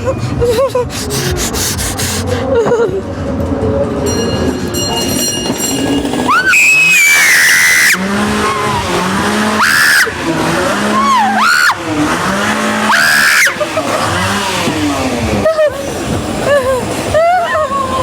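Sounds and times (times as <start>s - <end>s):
ride car rumbling on a track: 0.0s - 18.0s
girl screaming: 6.3s - 8.9s, 10.9s - 11.8s, 12.9s - 13.6s.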